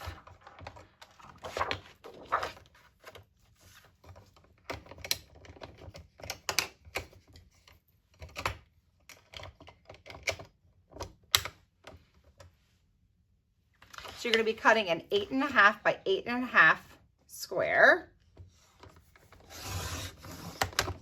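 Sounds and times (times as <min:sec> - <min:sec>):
paper rustling: 0:00.0 - 0:04.4.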